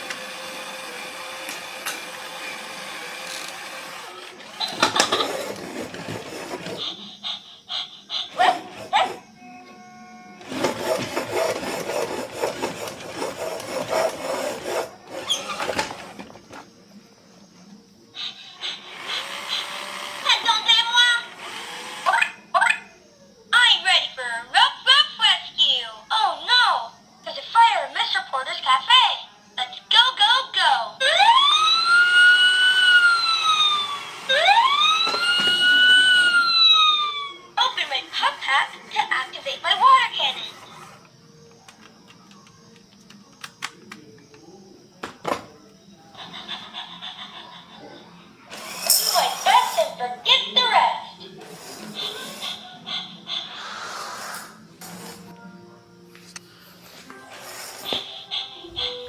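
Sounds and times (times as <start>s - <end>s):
rough rasping and scraping: 5.2s - 6.8s, 10.4s - 15.8s
siren wailing: 31.0s - 37.5s.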